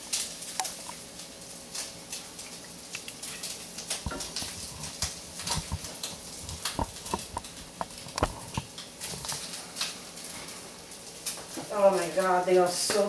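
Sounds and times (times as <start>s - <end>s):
food sizzling in a pan: 0.0s - 13.0s
spattering oil pops: 1.7s - 10.0s.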